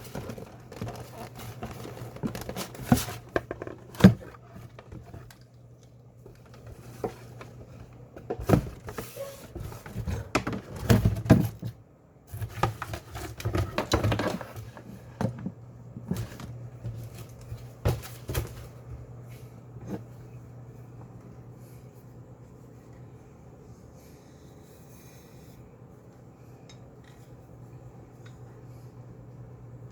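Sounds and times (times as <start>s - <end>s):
packaging rustling: 0.0s - 5.4s.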